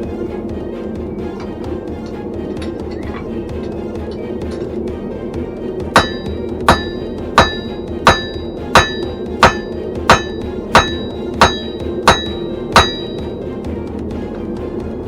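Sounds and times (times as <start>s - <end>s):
steady background noise: 0.0s - 14.4s
hammer striking an anvil: 5.9s - 13.5s.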